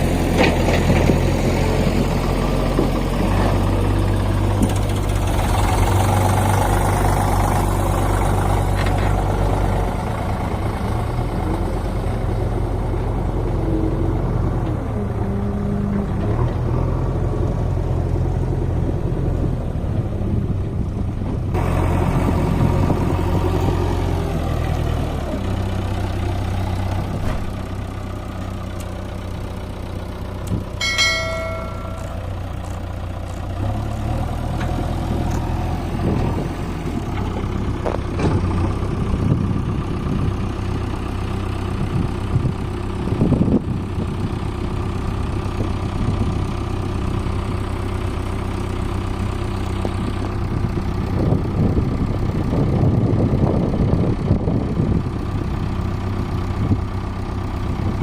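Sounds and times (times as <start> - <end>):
diesel engine running: 0.0 - 58.0
metallic clang: 30.8 - 32.8.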